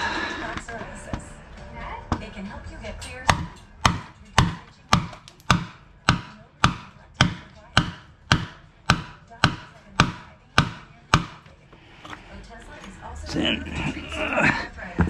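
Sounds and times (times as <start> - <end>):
hammer striking metal tool: 3.3 - 11.4.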